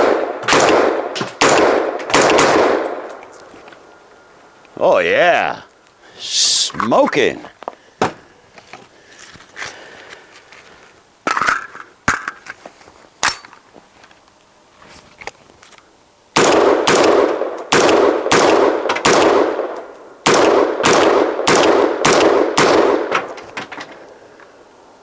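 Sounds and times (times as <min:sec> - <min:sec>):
rifle shots: 0:00.0 - 0:03.2, 0:16.4 - 0:23.4.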